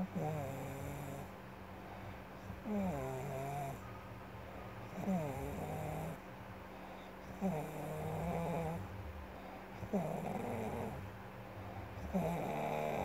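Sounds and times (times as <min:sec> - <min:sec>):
pitched snores: 0:00.0 - 0:01.3, 0:02.6 - 0:03.8, 0:05.0 - 0:06.2, 0:07.3 - 0:08.8, 0:09.8 - 0:11.0, 0:12.0 - 0:13.0.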